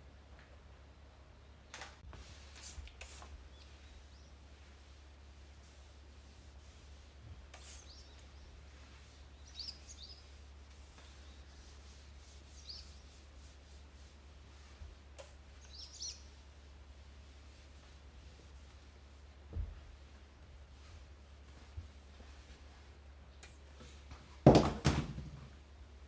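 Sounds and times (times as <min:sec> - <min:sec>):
low steady hum: 0:00.0 - 0:24.4
faint bird chirps: 0:03.4 - 0:04.4, 0:07.5 - 0:13.3, 0:15.5 - 0:16.5.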